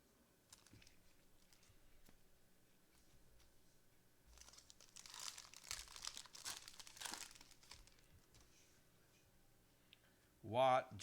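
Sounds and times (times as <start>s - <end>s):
foil wrapper tearing and crinkling: 0.5s - 1.7s, 4.3s - 8.1s.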